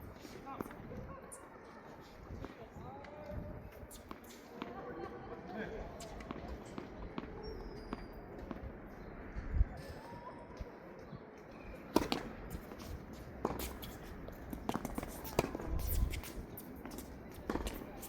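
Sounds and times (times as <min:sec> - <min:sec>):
wind rumble on microphone: 0:00.8 - 0:01.2, 0:02.2 - 0:03.9, 0:08.6 - 0:10.7, 0:15.5 - 0:16.6.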